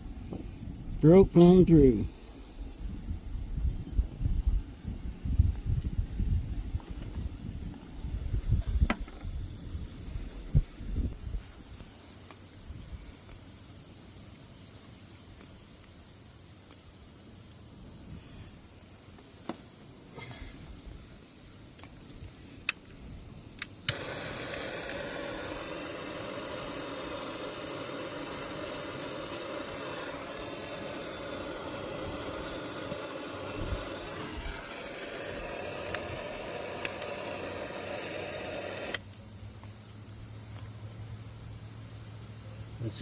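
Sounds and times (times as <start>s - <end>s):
sharp clicks: 22.6s - 25.2s, 35.7s - 39.2s
heat gun running: 23.7s - 39.1s.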